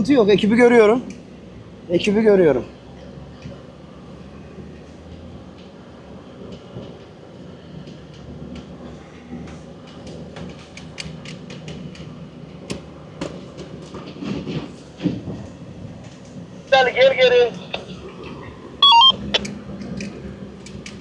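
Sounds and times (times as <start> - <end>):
engine running at low revs: 0.0 - 21.0
sharp clicks and knocks: 9.4 - 15.4, 19.4 - 21.0.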